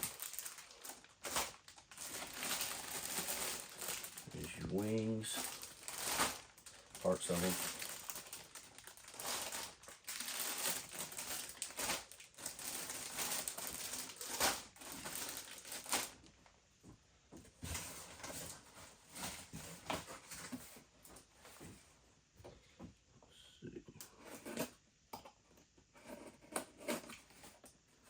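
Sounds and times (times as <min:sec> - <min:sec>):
plastic bags crinkling: 0:00.0 - 0:16.4.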